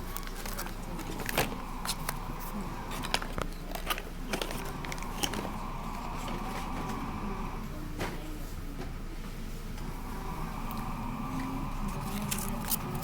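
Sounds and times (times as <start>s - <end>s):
plastic wrapping clicks and crinkles: 0.0s - 2.2s, 2.9s - 5.5s.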